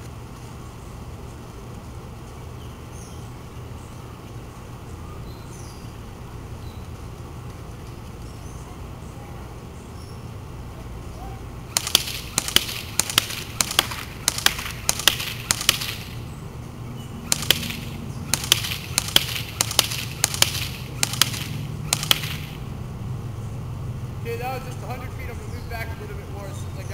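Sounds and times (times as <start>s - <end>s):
airsoft gun single shots: 11.7s - 16.3s, 17.2s - 22.7s.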